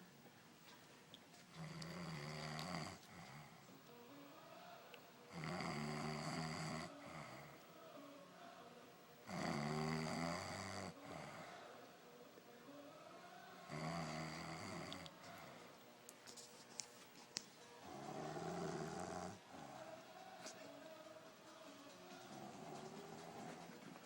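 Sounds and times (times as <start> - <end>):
man snoring: 1.6 - 3.6, 5.3 - 7.6, 9.2 - 11.6, 13.7 - 15.2, 17.8 - 19.8.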